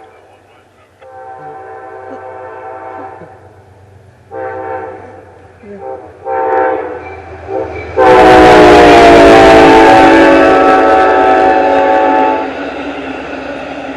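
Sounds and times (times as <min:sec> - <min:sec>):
train rushing past: 0:00.0 - 0:13.9
locomotive air horn blasts: 0:01.0 - 0:03.5, 0:04.3 - 0:12.6.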